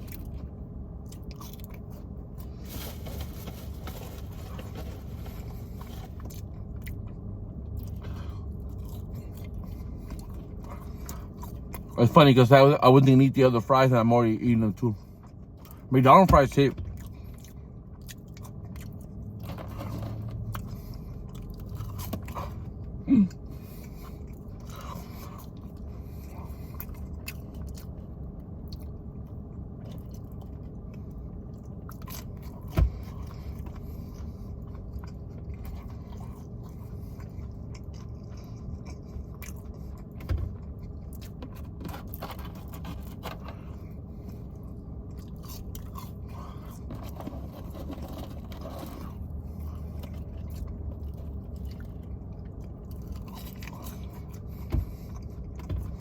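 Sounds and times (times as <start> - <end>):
person chewing food: 0.0 - 12.0, 16.8 - 56.0
steady low hum: 0.0 - 56.0
wrapper rustling: 2.6 - 6.0.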